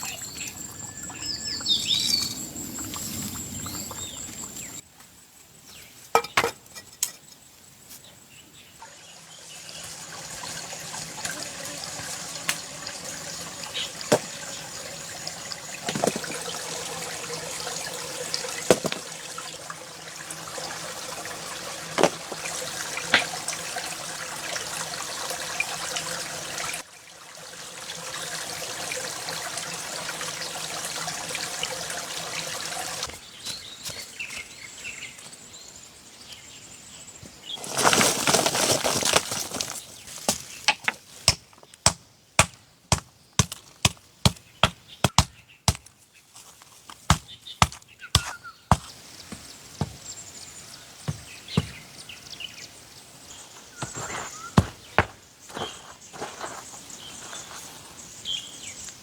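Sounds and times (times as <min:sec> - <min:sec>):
sharp irregular knocks: 0:53.8 - 0:55.6.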